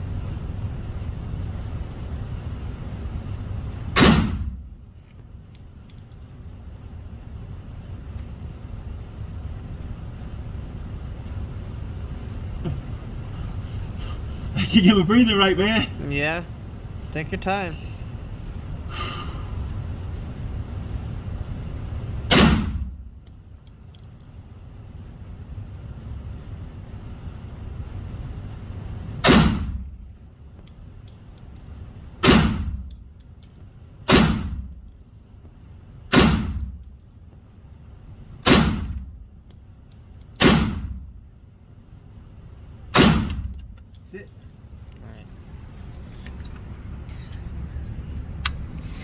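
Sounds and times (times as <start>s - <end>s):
low steady rumble: 0.0s - 49.0s
gunshots: 4.0s - 4.5s, 22.3s - 22.8s, 29.2s - 29.8s, 32.2s - 32.8s, 34.1s - 34.6s, 36.1s - 36.6s, 38.5s - 39.0s, 40.4s - 40.9s, 43.0s - 43.5s.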